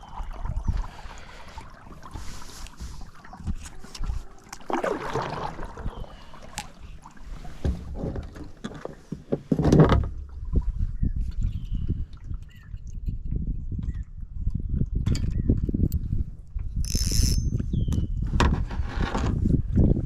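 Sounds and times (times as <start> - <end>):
swishing water splashes: 0.0 - 9.3.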